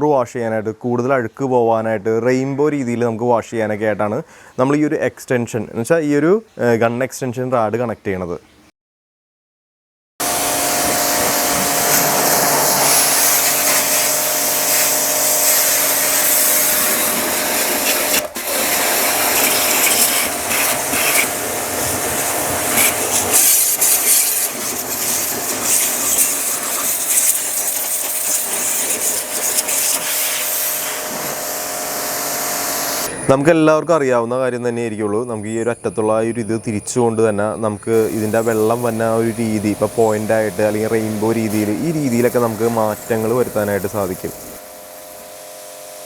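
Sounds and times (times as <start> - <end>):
high-pressure water spray hiss: 10.2 - 33.1, 37.9 - 46.0
pressure washer pump humming: 10.2 - 33.4, 37.9 - 46.0.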